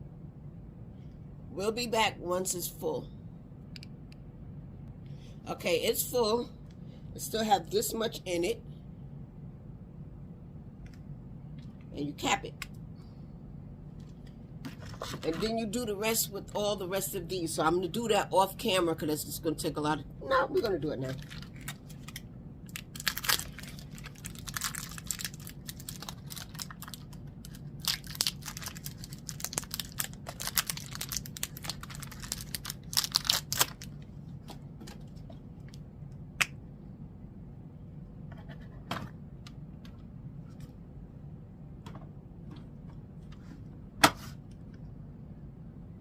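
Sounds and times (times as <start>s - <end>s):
low steady hum: 0.0s - 46.0s
packaging crinkling and rustling: 21.0s - 34.0s.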